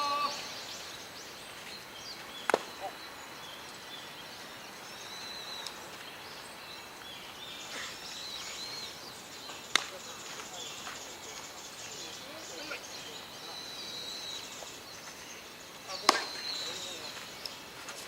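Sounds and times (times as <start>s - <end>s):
faint high chirping: 0.0s - 17.9s
baseball smacks: 2.4s - 2.9s, 9.7s - 10.0s, 16.0s - 16.4s.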